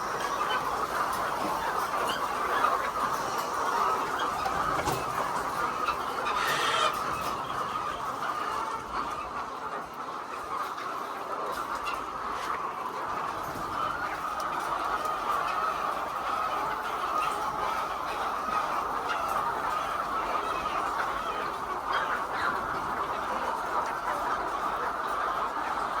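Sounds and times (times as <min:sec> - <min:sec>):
hens clucking: 0:00.0 - 0:26.0.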